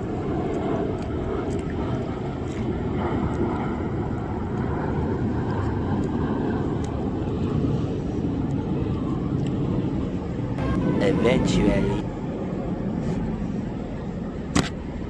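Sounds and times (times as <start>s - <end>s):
low engine rumble: 9.2s - 15.0s.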